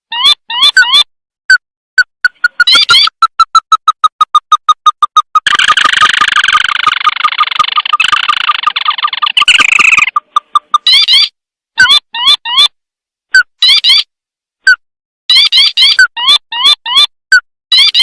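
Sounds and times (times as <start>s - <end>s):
crake piping and chattering trill: 2.0s - 12.6s.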